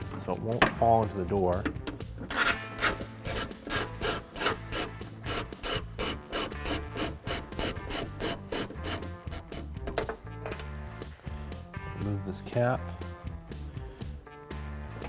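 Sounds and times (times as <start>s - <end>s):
ratchet rasping: 2.2s - 9.8s.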